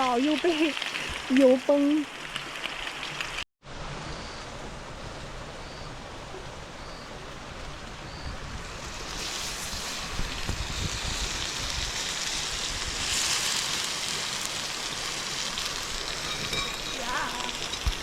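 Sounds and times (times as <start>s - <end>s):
meat sizzling in oil: 0.0s - 3.4s, 8.6s - 18.0s
wind rumble on microphone: 3.7s - 13.2s.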